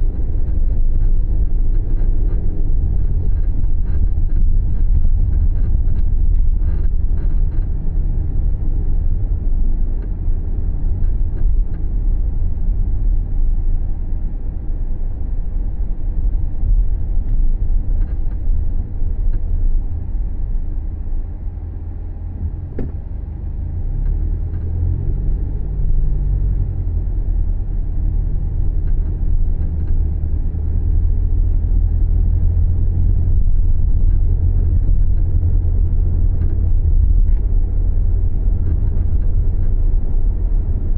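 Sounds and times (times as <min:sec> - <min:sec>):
car engine and road rumble: 0:00.0 - 0:40.9.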